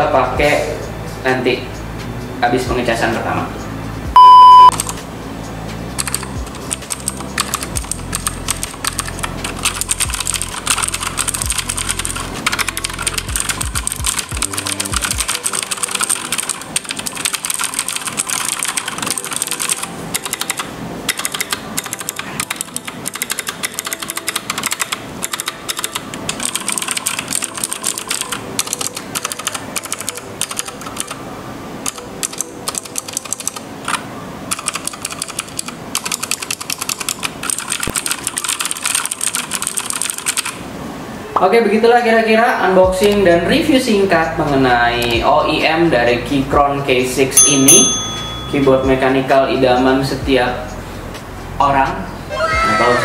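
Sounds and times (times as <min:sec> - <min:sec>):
mechanical keyboard typing: 0:06.0 - 0:31.2, 0:31.8 - 0:40.6.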